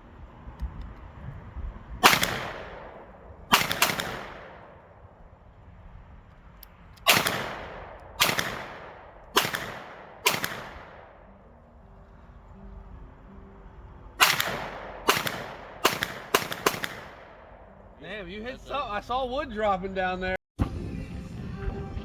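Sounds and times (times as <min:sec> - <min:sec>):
gunshots with echoing tail: 0:02.0 - 0:04.8, 0:07.1 - 0:11.4, 0:14.2 - 0:17.8.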